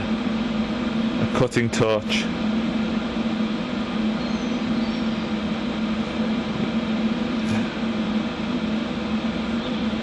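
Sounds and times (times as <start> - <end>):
steady low hum: 0.0 - 10.0
torch flame hissing: 2.1 - 9.7.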